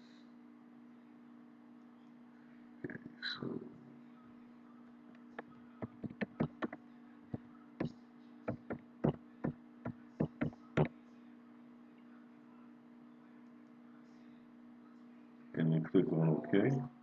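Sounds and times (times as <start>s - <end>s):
low electrical hum: 0.0s - 17.0s
keyboard typing: 5.8s - 6.8s, 10.2s - 10.6s.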